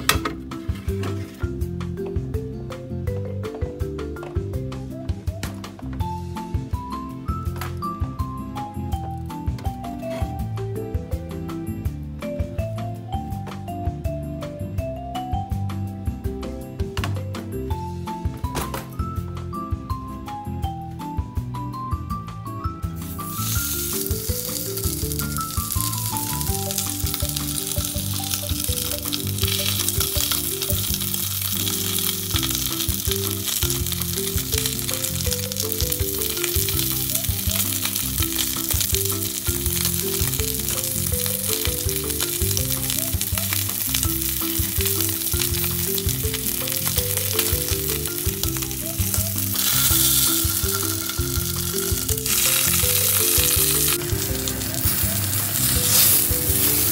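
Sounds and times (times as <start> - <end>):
background music: 0.0 - 56.9
fish sizzling in hot oil: 23.0 - 56.9.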